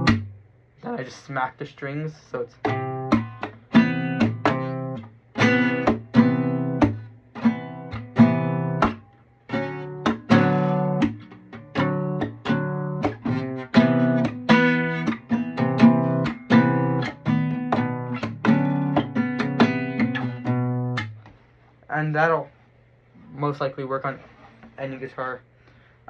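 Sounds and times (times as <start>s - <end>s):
classical guitar strumming: 0.0s - 0.4s, 2.6s - 21.3s
hand smacking guitar strings: 0.0s - 0.4s, 2.6s - 21.4s.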